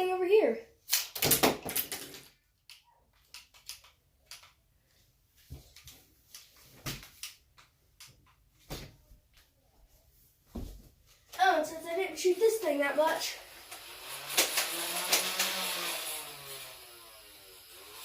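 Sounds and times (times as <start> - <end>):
toy dart blaster firing: 13.2 - 17.0.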